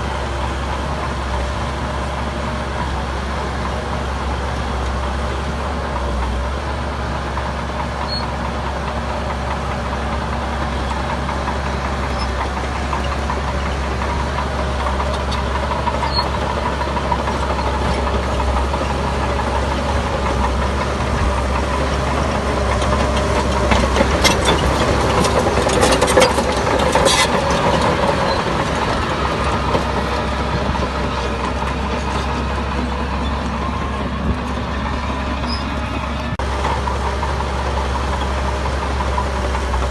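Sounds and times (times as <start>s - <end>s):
heavy diesel engine running: 0.0s - 39.9s
metallic clanks and rattles: 22.4s - 33.4s.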